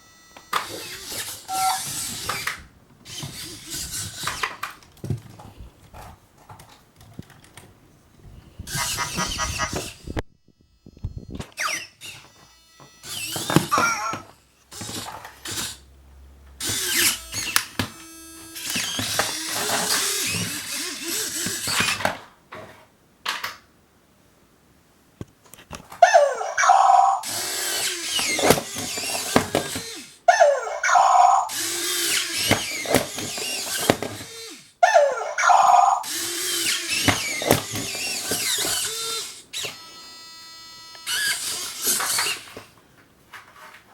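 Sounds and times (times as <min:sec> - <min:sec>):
toy motors and gears whirring: 0:00.0 - 0:05.4, 0:08.5 - 0:15.9, 0:16.6 - 0:22.3, 0:26.0 - 0:42.8
short electronic tones: 0:01.5 - 0:01.9.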